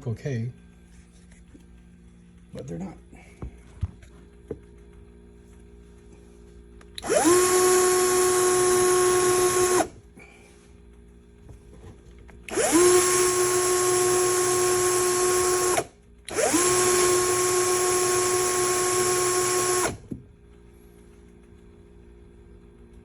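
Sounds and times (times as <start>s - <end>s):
electric drill whining: 7.0s - 10.0s, 12.4s - 20.1s.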